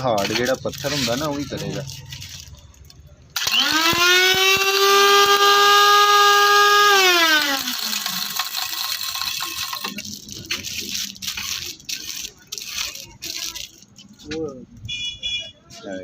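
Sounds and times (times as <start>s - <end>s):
rattling and handling noise: 0.0s - 3.1s, 8.0s - 14.9s
electric grinder motor whine: 3.4s - 9.9s.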